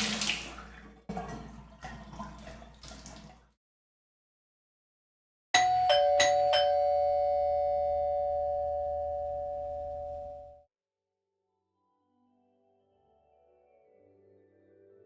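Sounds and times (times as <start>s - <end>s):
doorbell chime ding-dong: 5.6s - 10.6s.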